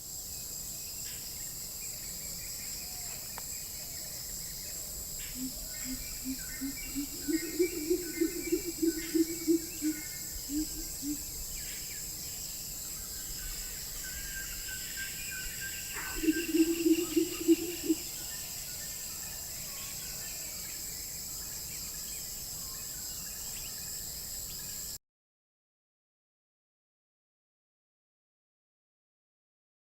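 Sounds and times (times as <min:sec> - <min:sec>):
high insect drone: 0:00.0 - 0:25.0
bird chirps: 0:13.3 - 0:18.8.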